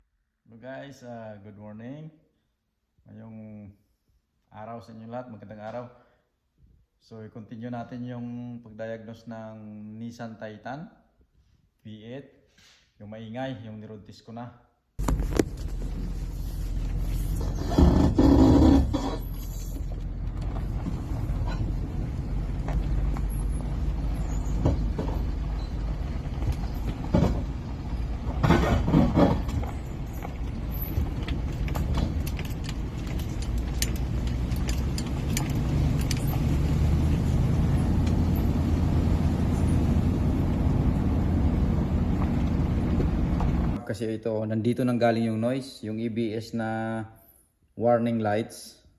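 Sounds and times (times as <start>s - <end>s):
pickup truck engine droning: 15.0s - 43.8s
road noise: 15.0s - 43.8s.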